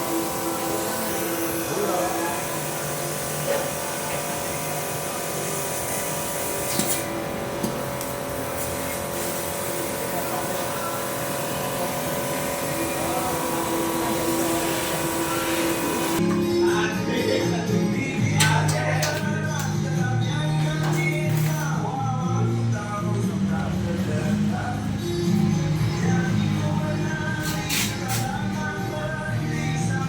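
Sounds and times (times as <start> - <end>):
laser cutting machine whirring: 0.0 - 16.2
music: 0.0 - 30.0.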